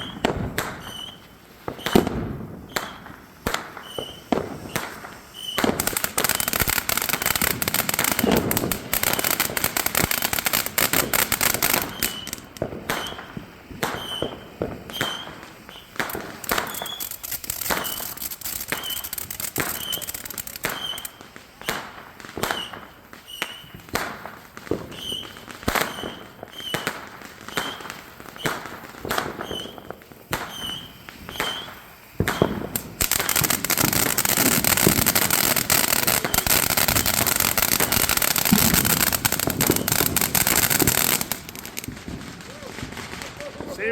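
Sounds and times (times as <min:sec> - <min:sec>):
fireworks crackling: 0:00.0 - 0:43.9
fireworks sharp bangs: 0:00.0 - 0:43.9.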